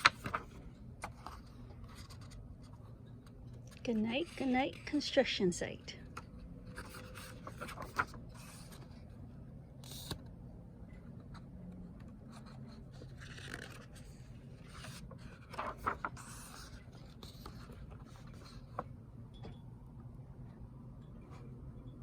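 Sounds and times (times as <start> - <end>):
paper pages rustling: 0.0 - 2.9, 6.2 - 9.0, 12.0 - 18.9.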